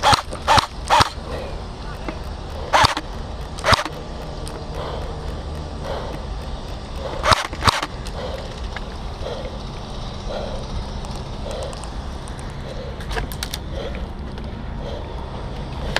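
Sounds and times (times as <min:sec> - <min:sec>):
airsoft gun shots: 0:00.0 - 0:01.2, 0:02.7 - 0:04.0, 0:07.2 - 0:07.9
steady low rumble: 0:00.0 - 0:15.9.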